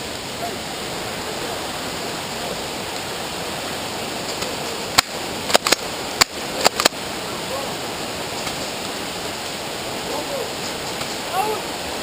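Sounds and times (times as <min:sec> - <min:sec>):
river water rushing: 0:00.0 - 0:12.0
sharp cracks: 0:04.2 - 0:07.0.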